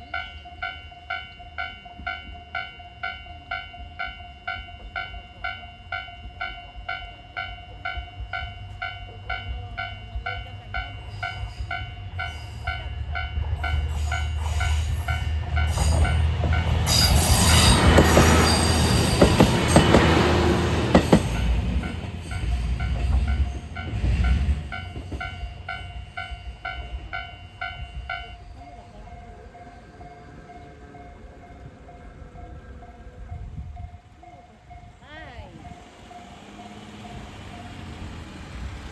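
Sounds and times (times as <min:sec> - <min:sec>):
train rumbling wheels: 0:00.0 - 0:38.9.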